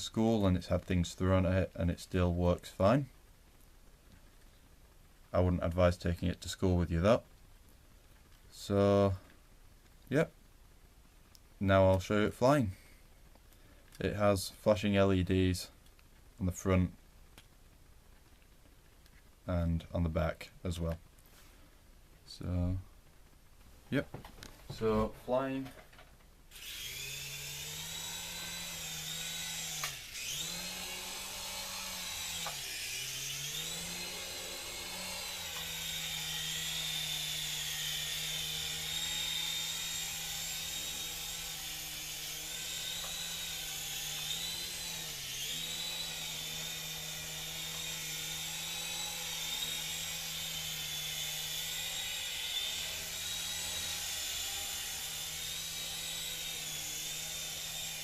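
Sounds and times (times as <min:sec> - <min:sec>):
toy helicopter whining: 0:26.5 - 0:58.0.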